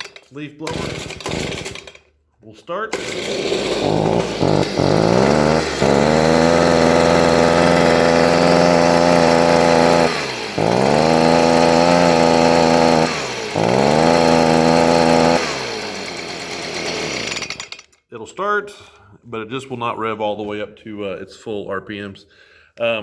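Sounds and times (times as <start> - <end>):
leaf blower engine revving: 0.6 - 2.0, 2.9 - 17.8.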